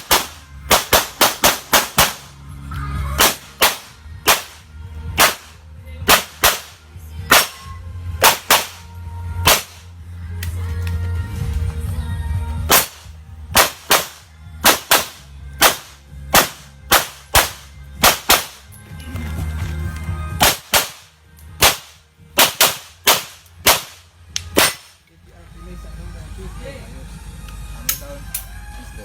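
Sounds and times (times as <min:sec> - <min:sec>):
pistol shots: 0:00.0 - 0:02.4, 0:03.2 - 0:04.6, 0:05.2 - 0:09.9, 0:12.7 - 0:18.7, 0:20.4 - 0:25.0.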